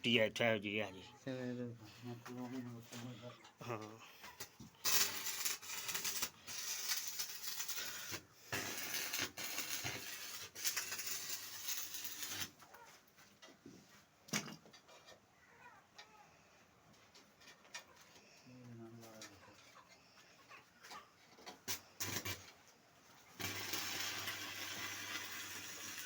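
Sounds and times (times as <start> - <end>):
welding arc crackling: 4.8 - 12.6, 21.7 - 22.4, 23.4 - 26.0.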